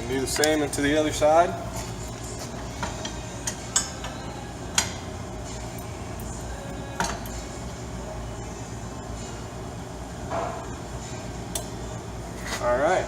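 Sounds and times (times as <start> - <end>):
metal pins and washers clinking: 2.8 - 5.0.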